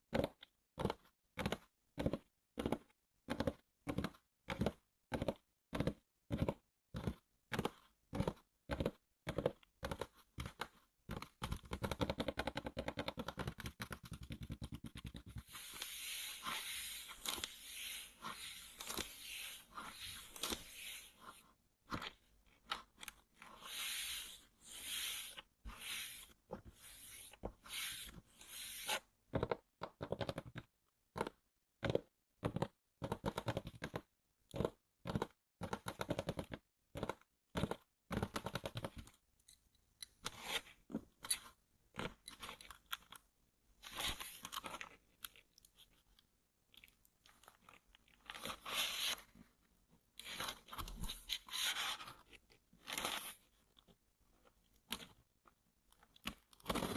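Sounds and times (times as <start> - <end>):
scratching on packaging: 15.3 - 22.2, 22.8 - 29.1, 48.2 - 49.4, 50.2 - 53.6.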